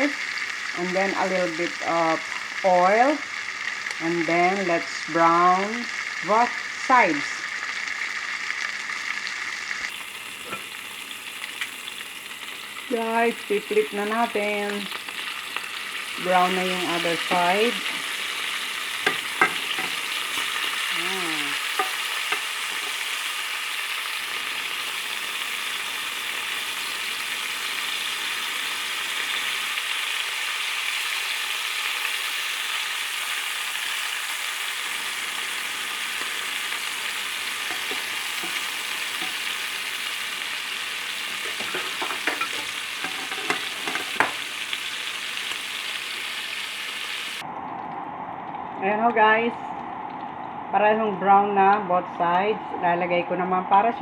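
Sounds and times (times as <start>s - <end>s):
pork chops sizzling in a pan: 0.0s - 47.4s.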